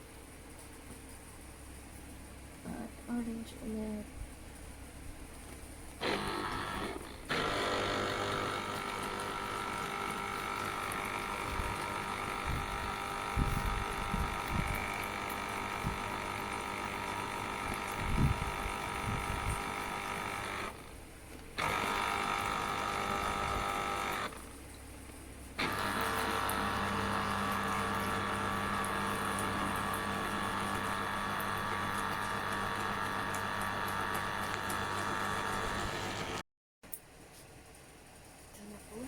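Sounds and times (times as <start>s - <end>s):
juicer motor whining: 6.0s - 24.6s, 25.6s - 36.4s.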